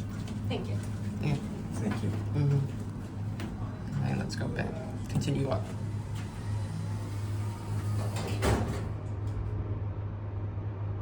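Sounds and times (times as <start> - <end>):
low hum from elevator car: 0.0 - 10.8
elevator doors sliding shut: 3.1 - 9.6.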